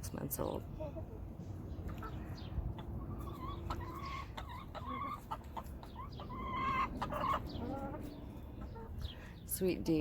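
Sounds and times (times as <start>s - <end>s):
hens clucking: 0.4s - 9.2s.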